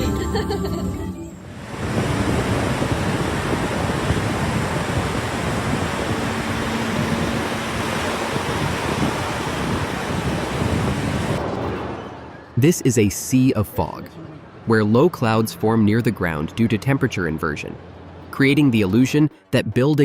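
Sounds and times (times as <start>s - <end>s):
faint steady hum: 0.0s - 11.4s
loud rushing noise: 1.2s - 12.4s.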